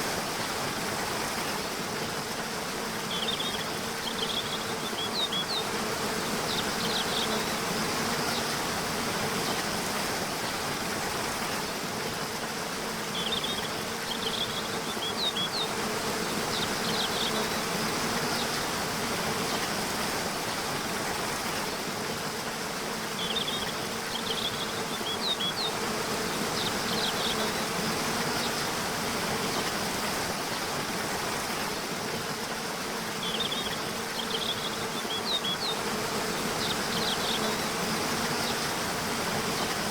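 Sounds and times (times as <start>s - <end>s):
small birds chirping: 33.2s - 38.8s.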